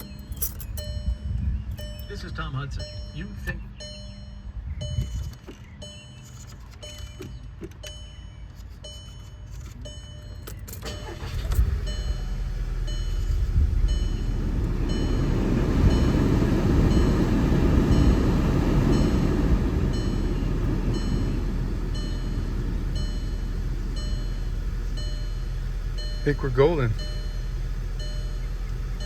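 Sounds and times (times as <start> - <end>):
electronic warning chime: 0.0 - 17.2, 18.9 - 29.0
car blower fan air rushing: 10.8 - 29.0.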